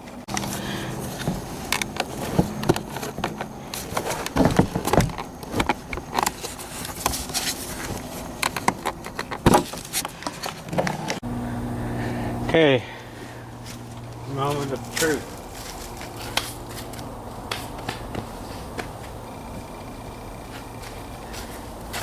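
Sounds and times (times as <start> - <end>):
faint low buzzing hum: 10.8 - 22.0.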